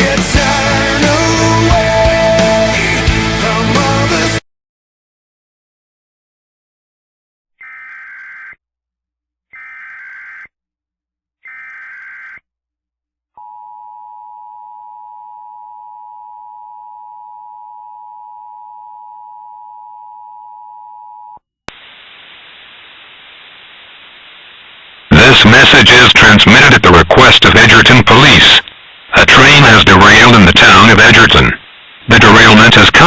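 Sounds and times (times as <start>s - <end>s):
shrill data-tone bursts: 7.6s - 8.6s, 9.6s - 10.5s, 11.4s - 12.4s
static hiss: 7.6s - 8.6s, 9.6s - 10.5s, 11.5s - 12.4s, 21.7s - 33.0s.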